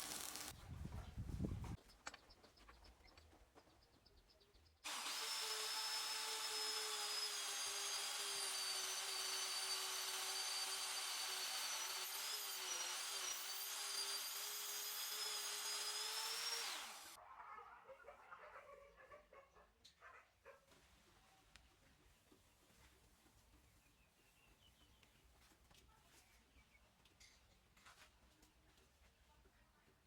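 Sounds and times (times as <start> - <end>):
power tool whining: 4.9 - 17.2.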